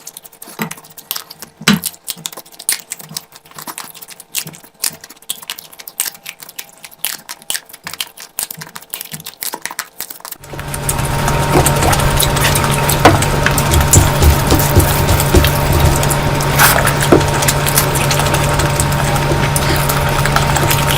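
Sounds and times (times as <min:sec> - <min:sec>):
mouth chewing and smacking: 0:00.0 - 0:20.9
soft low thumps: 0:13.0 - 0:17.6.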